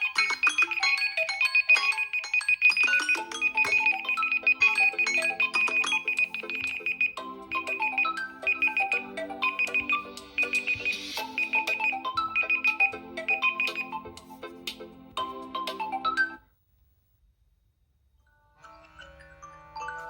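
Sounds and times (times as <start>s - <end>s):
smartphone alarm melody: 0.0s - 14.4s, 15.2s - 16.4s.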